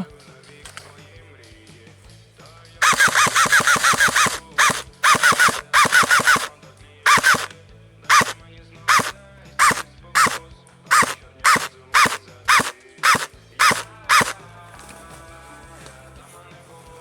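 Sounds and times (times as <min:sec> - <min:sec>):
gearbox mechanical twang: 0:02.8 - 0:06.5, 0:07.1 - 0:07.5, 0:08.1 - 0:14.4
airsoft gun firing bursts: 0:02.8 - 0:14.4.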